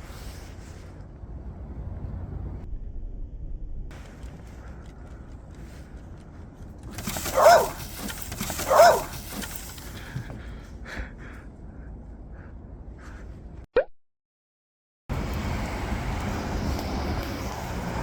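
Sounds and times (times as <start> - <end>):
puppy barking: 7.0 - 9.6.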